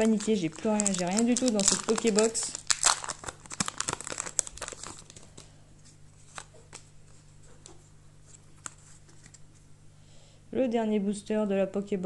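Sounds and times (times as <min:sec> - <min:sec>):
trading cards shuffling: 0:00.0 - 0:09.7.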